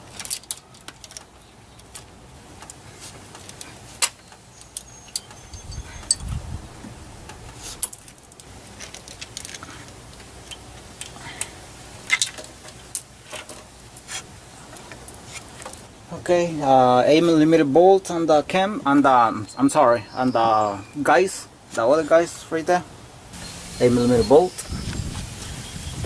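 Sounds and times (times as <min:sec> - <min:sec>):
metallic clinks of tools and parts: 0:04.1 - 0:06.3.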